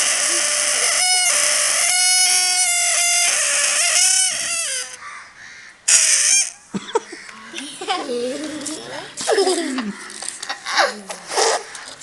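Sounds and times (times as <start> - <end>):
air squealing from balloon neck: 0.0 - 5.0, 5.9 - 6.6.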